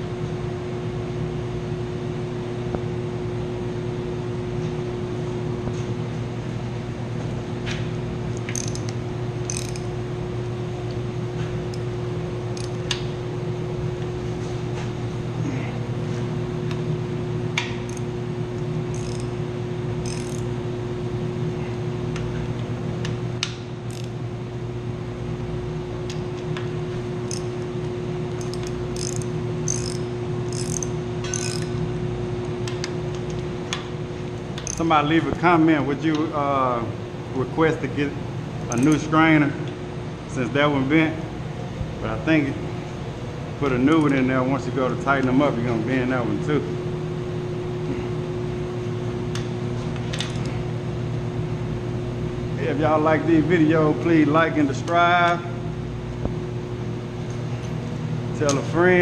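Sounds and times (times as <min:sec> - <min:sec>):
machinery humming: 0:02.4 - 0:59.0
ratchet wrench clicking: 0:08.4 - 0:09.9, 0:12.5 - 0:13.0, 0:17.9 - 0:18.1, 0:18.9 - 0:19.3, 0:20.0 - 0:20.5, 0:23.9 - 0:24.1, 0:27.3 - 0:27.5, 0:28.3 - 0:31.8, 0:34.6 - 0:34.9, 0:38.7 - 0:39.0.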